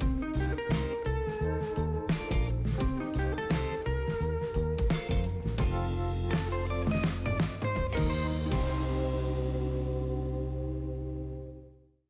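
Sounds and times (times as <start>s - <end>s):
held chord: 8.0s - 11.8s.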